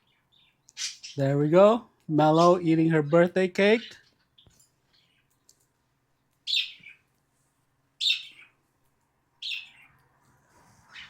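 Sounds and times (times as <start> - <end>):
cockatiel chirping: 6.4 - 7.0, 8.0 - 8.6, 9.4 - 10.0.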